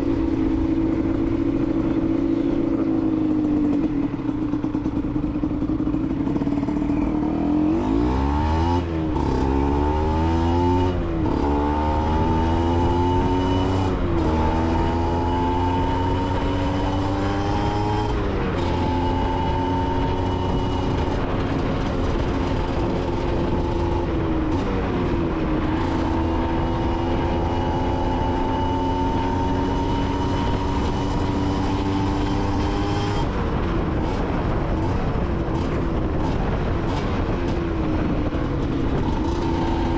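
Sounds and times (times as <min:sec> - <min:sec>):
two-stroke motorcycle engine accelerating: 0:00.0 - 0:39.9.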